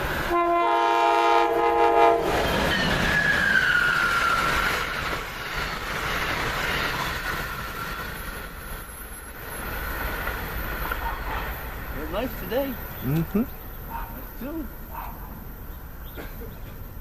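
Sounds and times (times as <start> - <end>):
train wheel noise: 0.0 - 17.0
train air horn chord: 0.3 - 2.3.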